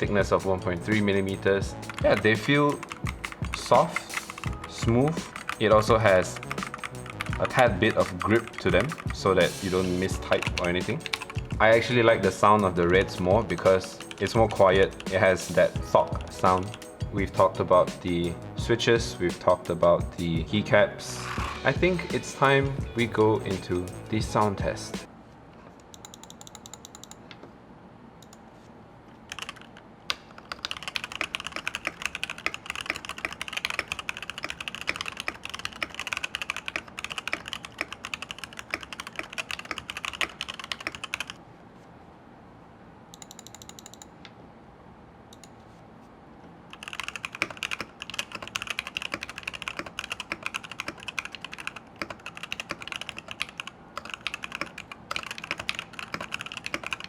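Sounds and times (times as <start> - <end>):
mechanical keyboard typing: 0.9 - 18.3, 25.9 - 27.2, 29.3 - 41.4, 43.2 - 44.1, 46.7 - 57.0.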